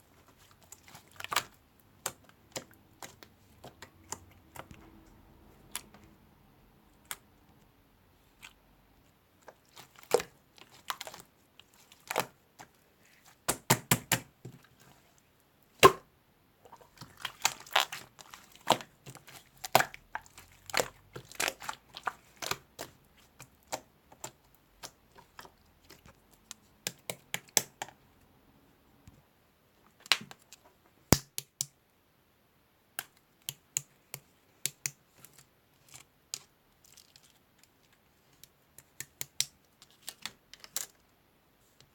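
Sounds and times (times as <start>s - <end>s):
crinkling handling noises: 16.6s - 26.7s, 33.9s - 41.9s.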